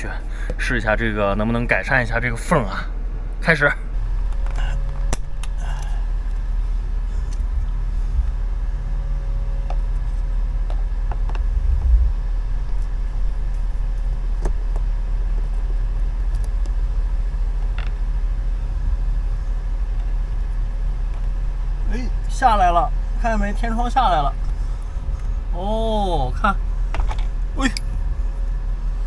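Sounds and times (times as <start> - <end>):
low mechanical rumble and hum: 0.0 - 29.0.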